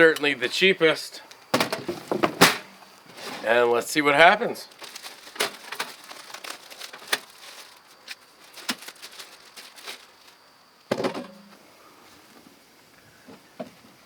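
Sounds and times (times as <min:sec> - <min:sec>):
cardboard rustling and crackling: 0:04.5 - 0:11.5.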